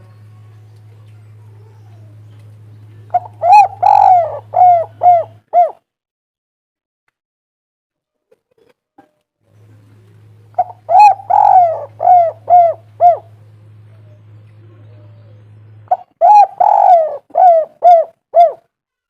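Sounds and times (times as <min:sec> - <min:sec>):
dove cooing: 0:01.2 - 0:05.8, 0:09.6 - 0:18.7.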